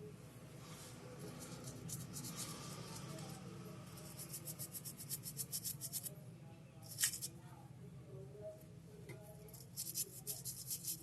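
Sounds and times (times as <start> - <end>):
low electrical hum: 0.0 - 11.0
small tool scratching: 1.2 - 6.2, 6.9 - 7.3, 9.4 - 11.0.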